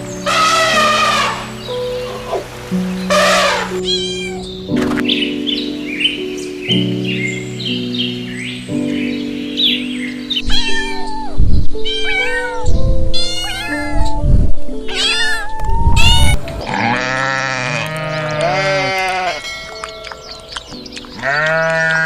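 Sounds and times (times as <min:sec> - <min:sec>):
cat meowing: 0:03.4 - 0:04.5, 0:10.4 - 0:14.2, 0:14.8 - 0:16.4
low bleats: 0:16.2 - 0:19.5.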